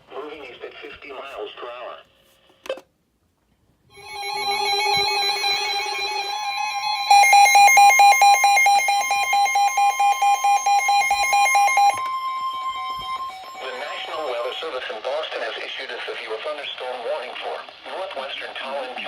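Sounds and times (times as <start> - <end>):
steady alarm tone: 3.9 - 15.2
rapid pulsing alarm beeps: 6.9 - 14.8.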